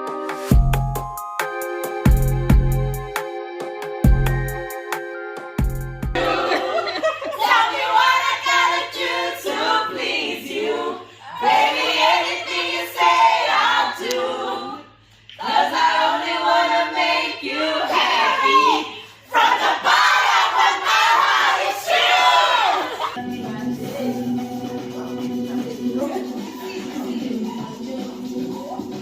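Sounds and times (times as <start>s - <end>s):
voices singing together: 6.2s - 29.0s.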